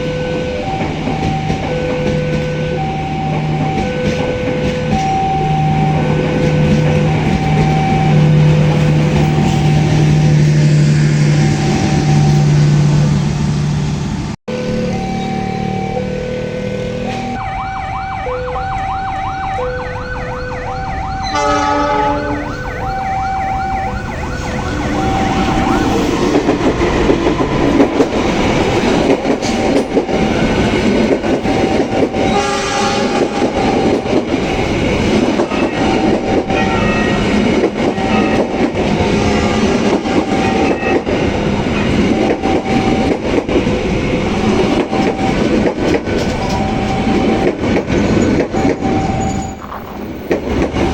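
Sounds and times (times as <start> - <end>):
level crossing alarm: 0.0 - 12.9, 14.5 - 50.9
train horn: 21.2 - 23.0, 32.2 - 33.8, 35.4 - 39.8
train wheels clacking: 24.6 - 50.9.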